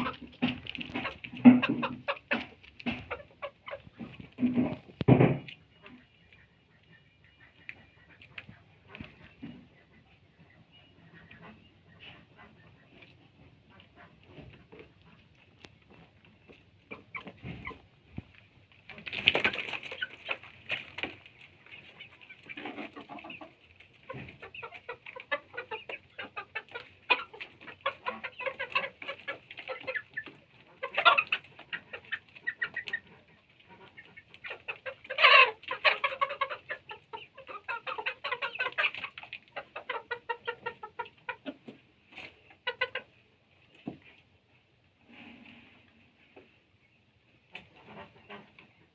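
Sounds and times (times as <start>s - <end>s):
chickens clucking: 0.0s - 48.9s
chicken squawks: 24.1s - 41.6s.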